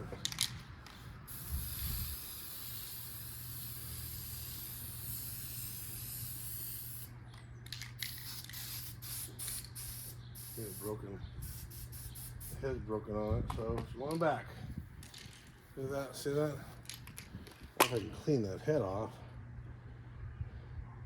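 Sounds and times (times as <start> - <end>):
spray paint can hissing: 0.2 - 7.1, 7.7 - 12.6.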